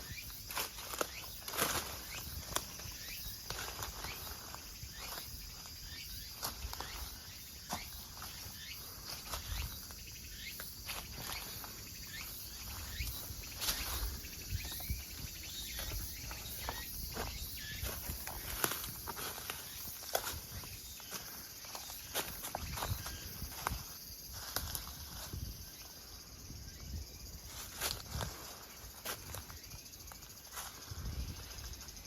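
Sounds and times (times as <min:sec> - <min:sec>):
faint insect hum: 0:00.0 - 0:32.0
footsteps on a trail: 0:00.4 - 0:10.0, 0:10.6 - 0:25.6, 0:27.5 - 0:31.9
snaps and crackles underfoot: 0:15.7 - 0:23.8.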